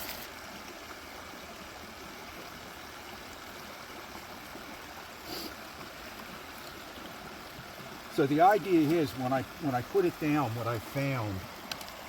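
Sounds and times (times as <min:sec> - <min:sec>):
flowing stream: 0:00.0 - 0:12.0.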